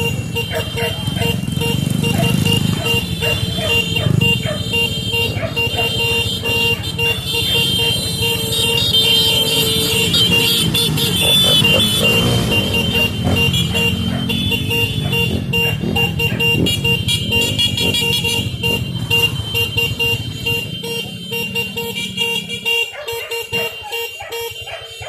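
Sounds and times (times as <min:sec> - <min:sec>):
horn tooting short blasts: 0:00.0 - 0:25.0
vehicle engines rumbling: 0:00.0 - 0:25.0.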